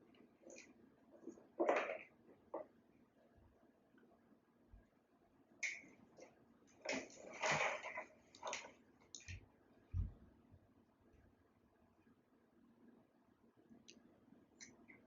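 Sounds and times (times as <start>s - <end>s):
scraping and rattling: 6.8s - 8.8s.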